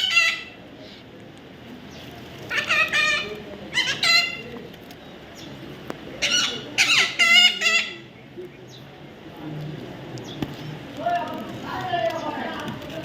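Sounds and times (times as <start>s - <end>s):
young parrot calling: 2.5s - 4.4s, 6.2s - 8.0s.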